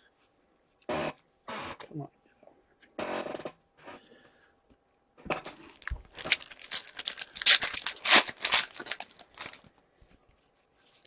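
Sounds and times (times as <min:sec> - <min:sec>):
wrapper torn open and crinkled: 0:05.7 - 0:09.7.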